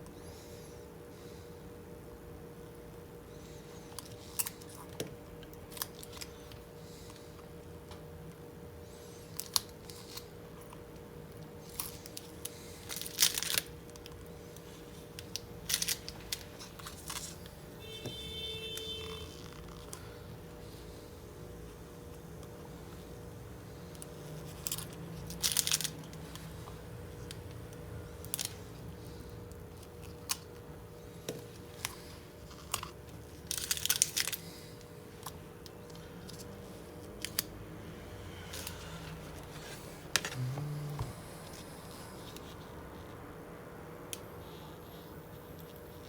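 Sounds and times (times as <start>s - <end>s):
film peeling crackle: 11.7s - 14.2s, 15.2s - 17.4s, 24.4s - 26.2s, 33.4s - 34.4s.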